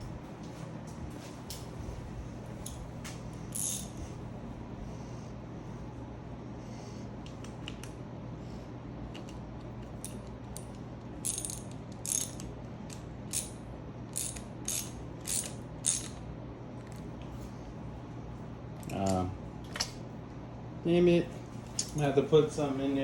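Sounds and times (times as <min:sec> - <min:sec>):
low steady hum: 0:00.0 - 0:23.0
ratchet wrench clicking: 0:03.5 - 0:04.0, 0:10.0 - 0:12.5, 0:13.3 - 0:16.2.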